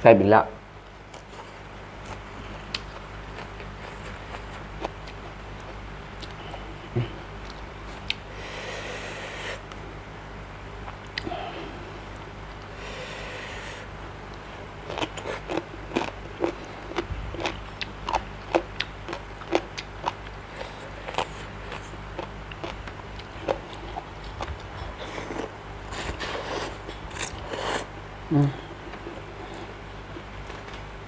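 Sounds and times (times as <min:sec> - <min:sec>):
person chewing with wet crunches: 0:01.1 - 0:06.7, 0:07.4 - 0:08.2, 0:14.3 - 0:27.9.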